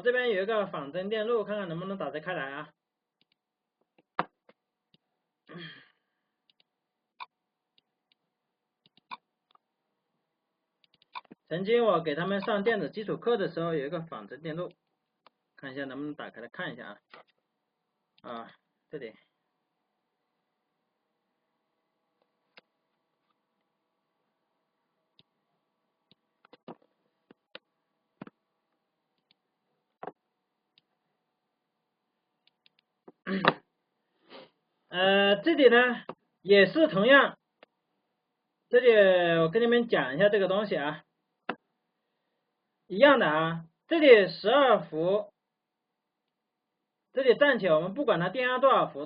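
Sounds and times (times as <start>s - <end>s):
computer mouse clicks: 8.8s - 9.6s, 10.8s - 11.4s
computer mouse clicking: 10.8s - 11.4s.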